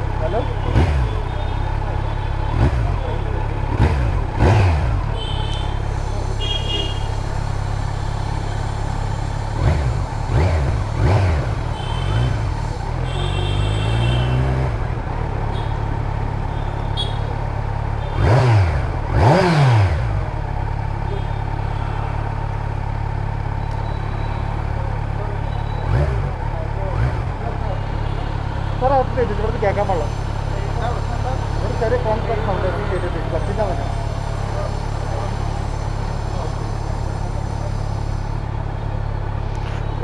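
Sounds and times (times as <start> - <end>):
motorcycle engine idling: 0.0 - 18.2, 20.0 - 40.0
motorcycle throttle revs: 0.1 - 16.3, 17.7 - 21.0, 25.8 - 27.7.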